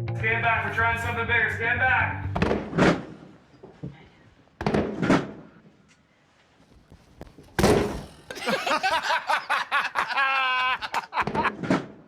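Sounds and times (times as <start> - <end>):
excited raised voices: 8.6 - 11.2.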